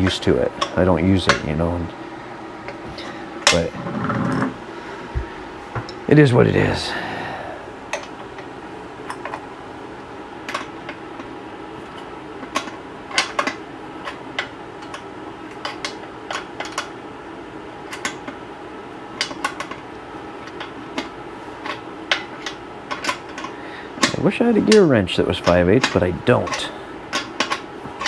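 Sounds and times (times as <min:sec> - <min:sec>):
steady low hum: 0:00.0 - 0:28.0
wrench clinking on bolts: 0:20.5 - 0:28.0.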